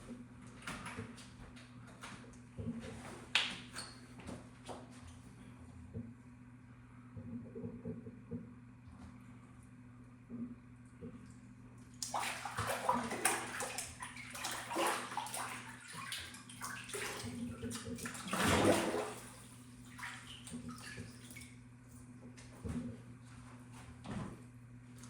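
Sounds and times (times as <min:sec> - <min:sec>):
water splashing in small tub: 0:11.8 - 0:21.6.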